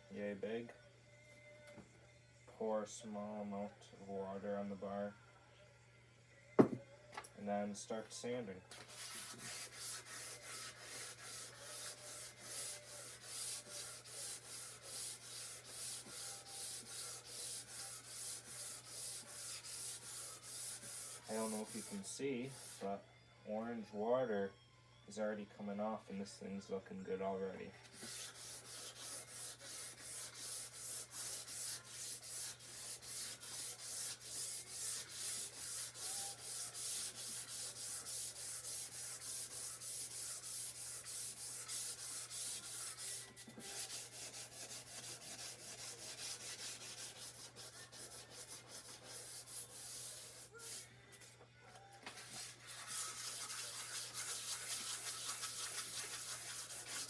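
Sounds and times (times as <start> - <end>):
sandpaper rubbing on metal: 8.8 - 22.8, 27.9 - 50.9, 52.1 - 57.0.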